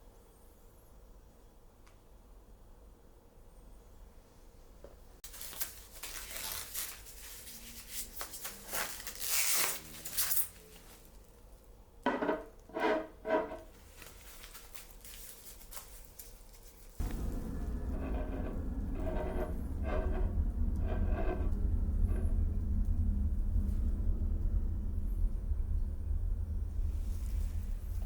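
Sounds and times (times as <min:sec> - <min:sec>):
packaging rustling and tearing: 0:05.2 - 0:11.1, 0:13.9 - 0:17.0.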